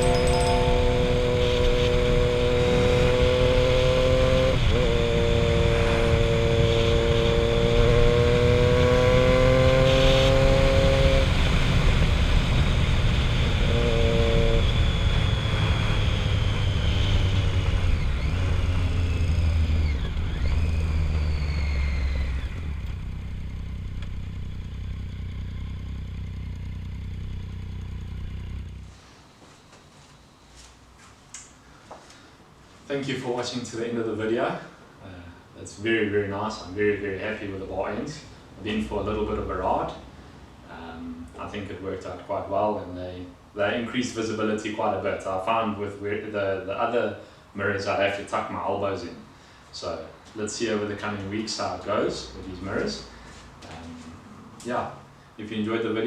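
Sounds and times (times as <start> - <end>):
motorcycle engine running: 10.4 - 28.9.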